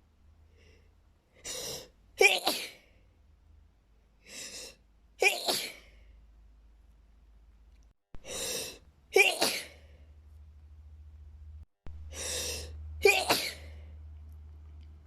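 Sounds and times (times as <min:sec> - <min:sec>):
person sneezing: 0:01.5 - 0:02.9, 0:05.2 - 0:05.9, 0:08.3 - 0:09.8, 0:12.2 - 0:13.8.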